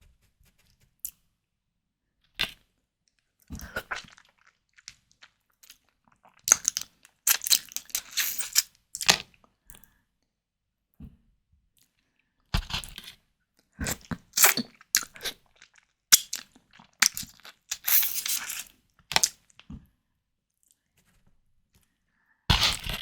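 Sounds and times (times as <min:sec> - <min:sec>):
prawns being bitten and chewed: 0:03.5 - 0:09.3, 0:13.8 - 0:19.6.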